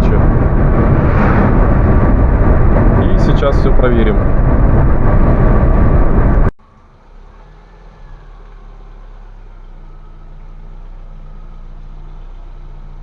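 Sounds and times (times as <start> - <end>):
car engine idling: 0.0 - 7.4
car driving noise inside: 0.0 - 13.0.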